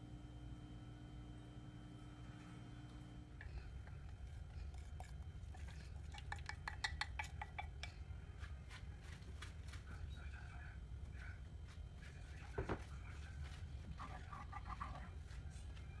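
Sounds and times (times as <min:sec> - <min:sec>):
low steady hum: 0:00.0 - 0:16.0
utensil clinking on cookware: 0:03.4 - 0:08.0.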